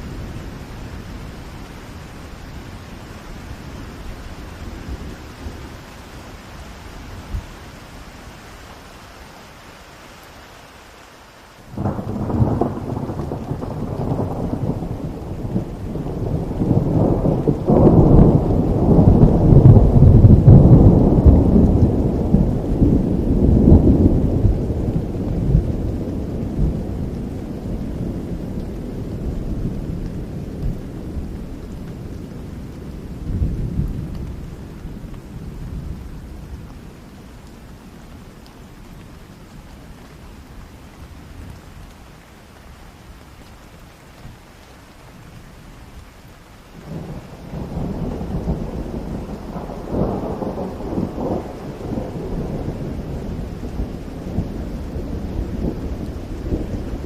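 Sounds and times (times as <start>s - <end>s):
steady rain: 0.0s - 57.0s
thunder rumbling: 11.7s - 37.9s, 46.8s - 57.0s.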